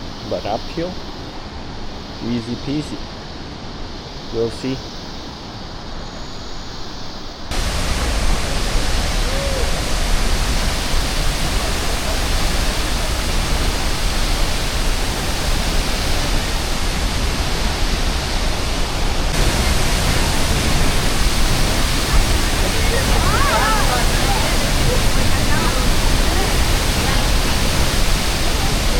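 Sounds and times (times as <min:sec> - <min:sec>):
waterfall roaring: 0:07.5 - 0:28.9.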